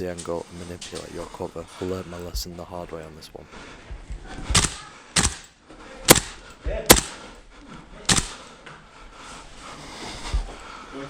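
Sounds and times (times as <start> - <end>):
airsoft gun shots: 4.5 - 5.5, 6.1 - 7.3, 8.1 - 8.4.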